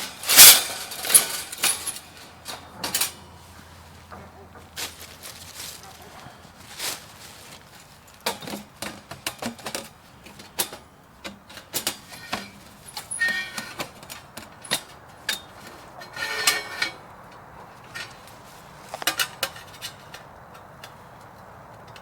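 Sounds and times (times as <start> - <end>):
metallic clink: 0.0 - 3.2
ringing clatter: 0.0 - 3.3, 11.7 - 17.0.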